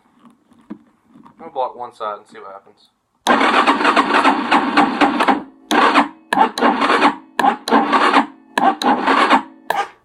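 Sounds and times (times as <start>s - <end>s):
electric starter cranking engine: 3.2s - 9.8s.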